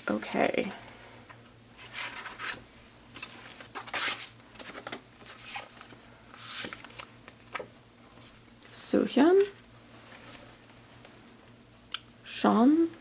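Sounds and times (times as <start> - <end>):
paper and cardboard rustling: 1.8 - 7.6.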